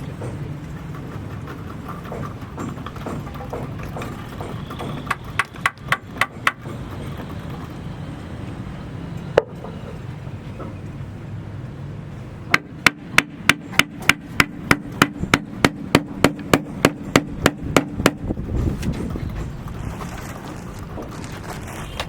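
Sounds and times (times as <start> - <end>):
hammer blows: 2.1 - 7.6, 12.5 - 19.5.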